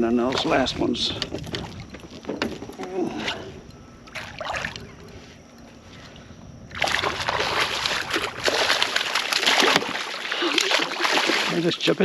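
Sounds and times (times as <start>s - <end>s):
fish thrashing and splashing: 4.0s - 5.1s, 6.6s - 11.7s.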